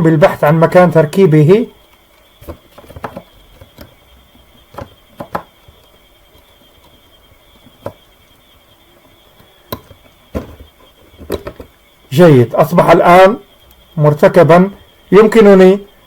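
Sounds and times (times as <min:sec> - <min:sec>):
faint high whine: 0:00.0 - 0:16.0
microphone cable clicks and knocks: 0:02.4 - 0:04.0, 0:04.7 - 0:07.0, 0:09.7 - 0:11.8.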